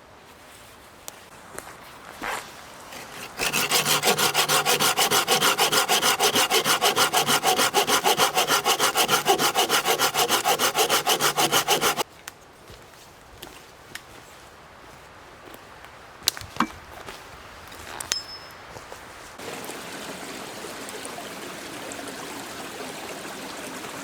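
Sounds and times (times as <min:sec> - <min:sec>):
hand saw cutting wood: 0:02.9 - 0:12.0.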